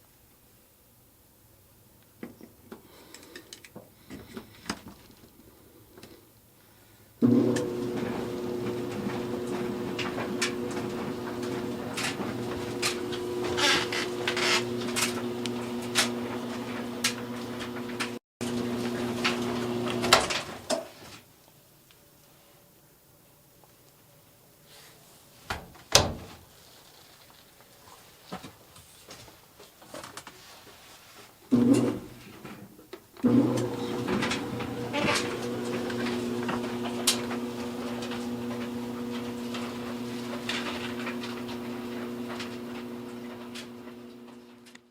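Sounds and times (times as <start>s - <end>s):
knocks and clicks in dryer: 7.2s - 18.2s, 33.2s - 44.7s
dryer winding down: 7.2s - 20.8s, 31.5s - 32.1s, 33.2s - 44.8s
clothes dryer motor hum: 7.2s - 21.2s, 31.5s - 32.6s, 33.2s - 44.9s.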